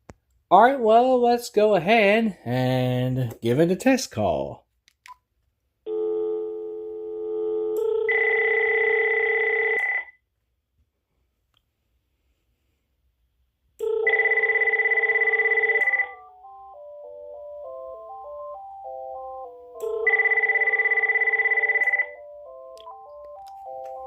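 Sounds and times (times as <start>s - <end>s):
cordless phone ringing: 5.9s - 10.2s, 13.8s - 24.0s.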